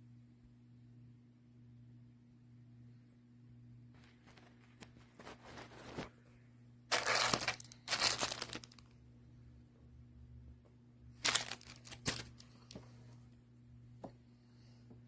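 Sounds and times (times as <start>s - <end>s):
low electrical hum: 0.0s - 15.0s
plastic crinkling and rustling: 4.0s - 6.3s, 6.9s - 8.9s, 11.2s - 12.8s.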